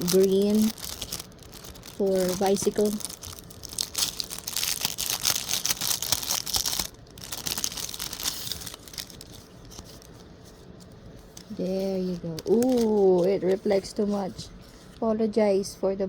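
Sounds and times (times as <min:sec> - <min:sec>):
plastic packaging crinkling: 0:00.0 - 0:14.4.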